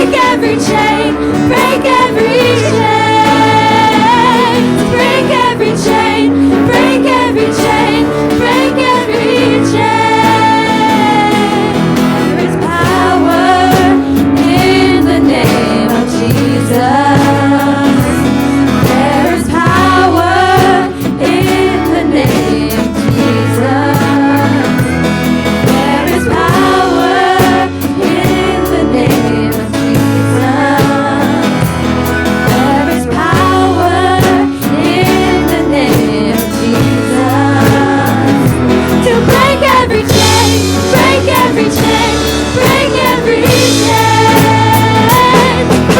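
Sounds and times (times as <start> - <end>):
band playing bass guitar drums: 0.0 - 45.9
voices singing melody: 0.0 - 45.9.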